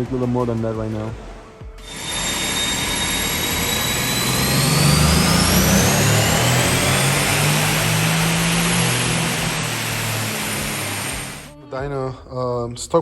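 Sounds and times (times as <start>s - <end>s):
car engine at full throttle: 1.2s - 11.5s
high whine rising in pitch: 1.8s - 11.6s.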